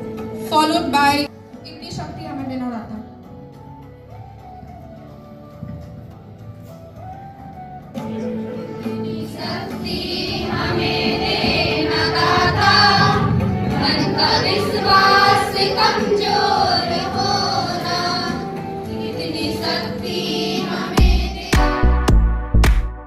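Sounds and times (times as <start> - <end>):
women singing together: 9.0 - 21.8.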